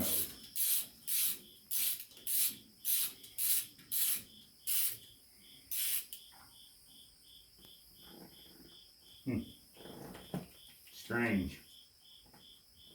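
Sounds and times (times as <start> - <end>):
cricket chirping: 0.0 - 12.9.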